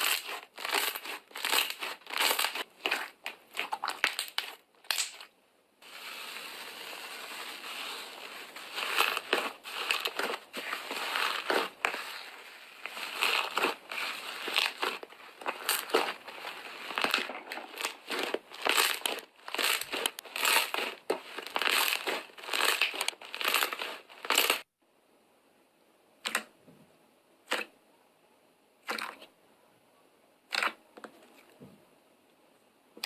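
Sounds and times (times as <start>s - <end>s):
slime crackling and popping: 0.0s - 24.7s.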